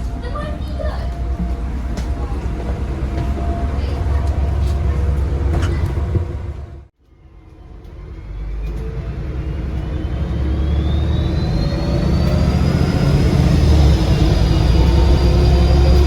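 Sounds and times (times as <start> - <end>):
bus diesel engine accelerating: 0.0 - 16.0
turbocharger whistle: 9.7 - 16.0.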